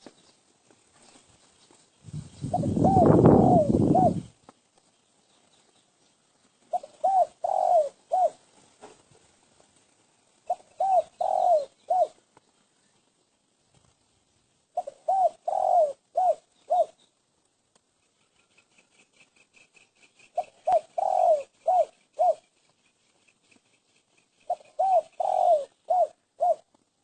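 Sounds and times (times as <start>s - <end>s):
dove cooing: 2.1s - 4.4s, 6.7s - 8.4s, 10.4s - 12.2s, 14.7s - 17.0s, 20.2s - 22.6s, 24.4s - 26.8s.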